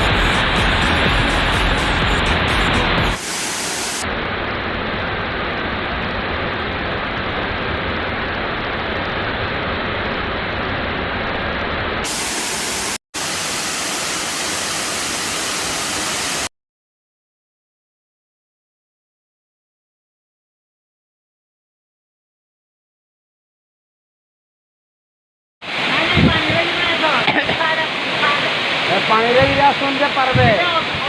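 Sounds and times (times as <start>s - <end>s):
waterfall roaring: 0.5s - 16.5s, 25.6s - 31.0s.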